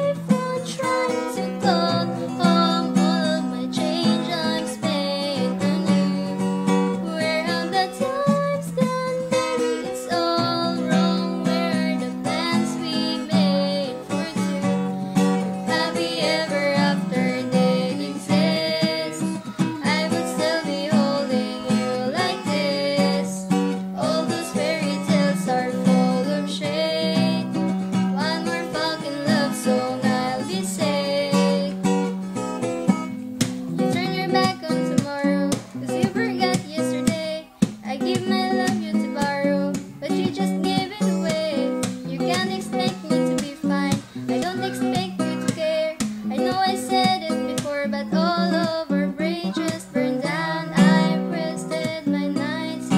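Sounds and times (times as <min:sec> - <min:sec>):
person singing: 0:00.0 - 0:32.1, 0:33.4 - 0:52.9
acoustic guitar strummed: 0:00.0 - 0:52.9.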